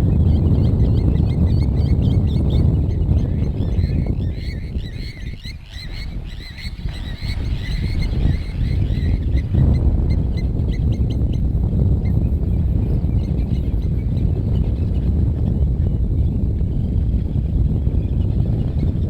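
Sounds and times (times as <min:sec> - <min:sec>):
steady low rumble: 0:00.0 - 0:05.0, 0:06.9 - 0:19.0.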